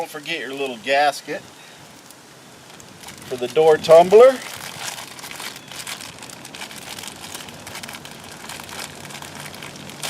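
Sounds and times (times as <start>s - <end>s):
plastic bag crinkling: 2.0s - 10.0s.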